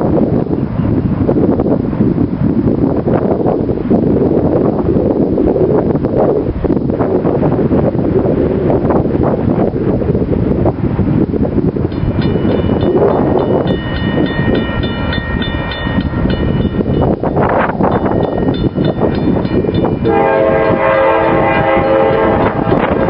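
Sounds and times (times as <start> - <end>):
wind buffeting microphone: 0.0 - 23.0
locomotive air horn chord: 20.0 - 23.0.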